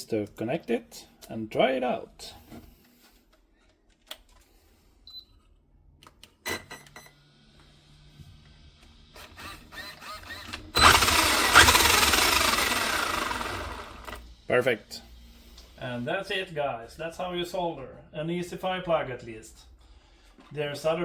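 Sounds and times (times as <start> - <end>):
toy car motor running: 9.2 - 14.2.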